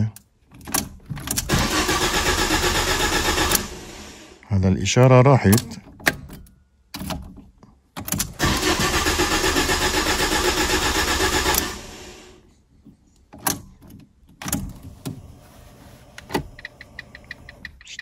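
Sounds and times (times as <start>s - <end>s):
car engine cranking: 0.2s - 4.4s, 5.4s - 12.4s, 16.1s - 18.0s.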